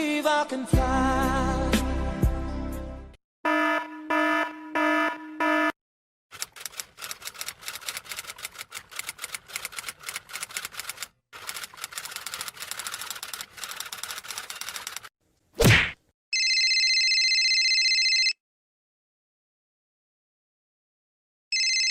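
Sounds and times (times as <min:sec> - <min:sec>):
keyboard typing: 0:06.3 - 0:15.1.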